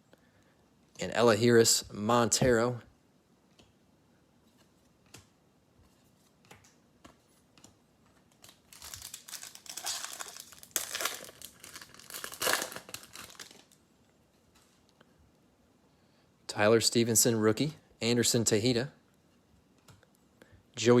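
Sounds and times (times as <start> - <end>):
foil wrapper crinkling and tearing: 8.4 - 13.8.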